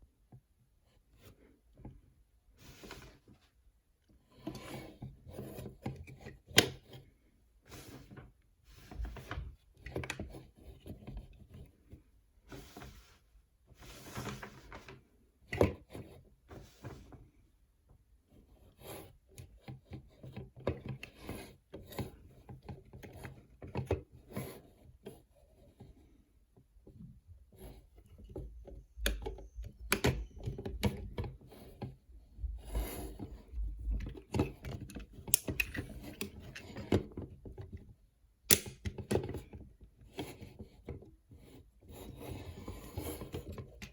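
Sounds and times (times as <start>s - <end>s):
plastic parts clicking and scraping: 27.8s - 32.1s, 32.8s - 43.9s
plastic snaps: 38.5s - 39.0s.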